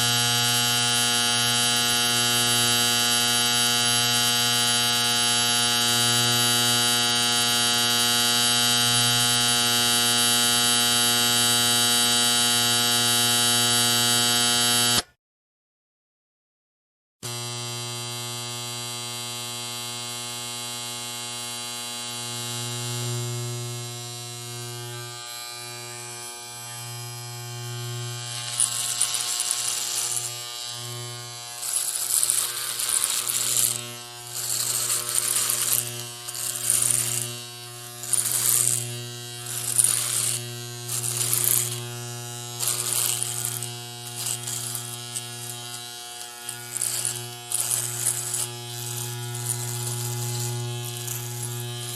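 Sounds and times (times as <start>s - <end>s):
electric hair clipper buzzing: 0.0s - 15.1s, 17.2s - 51.9s
clipper blades cutting hair: 13.4s - 15.1s, 24.4s - 51.9s.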